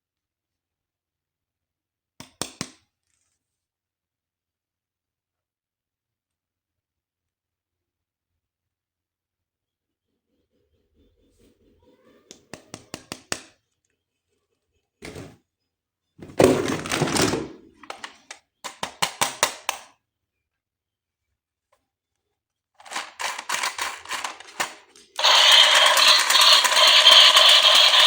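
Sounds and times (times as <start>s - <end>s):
packaging rustling: 22.8s - 28.0s
plastic toy parts clicking: 22.8s - 28.0s
toy mechanical buzz: 22.8s - 28.0s.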